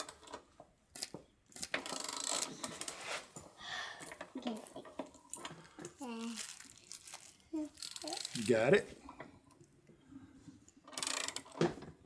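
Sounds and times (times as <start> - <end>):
rustling: 4.5 - 8.9.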